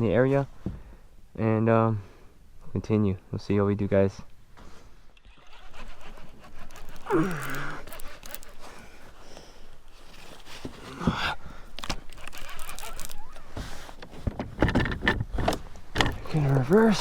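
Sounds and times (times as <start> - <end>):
gear being handled: 5.2 - 17.0.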